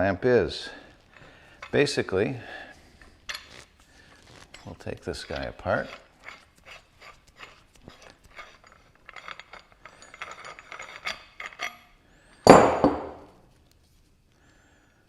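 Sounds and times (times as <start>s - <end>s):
small metallic clicks and rattles: 3.3s - 11.9s.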